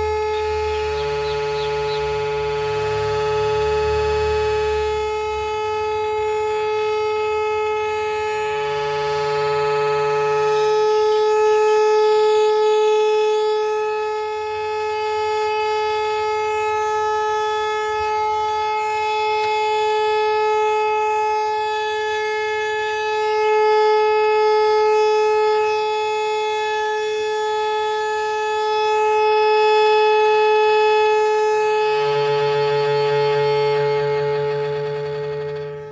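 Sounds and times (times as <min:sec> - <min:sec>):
low hum: 0:00.0 - 0:11.4, 0:29.9 - 0:35.9
horn long steady note: 0:00.0 - 0:35.9.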